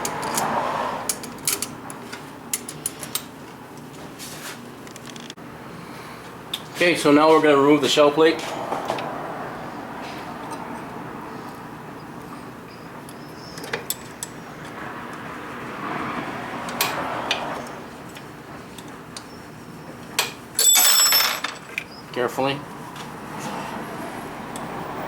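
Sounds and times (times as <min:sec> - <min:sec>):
metal clicks and clinks: 0:00.0 - 0:00.5.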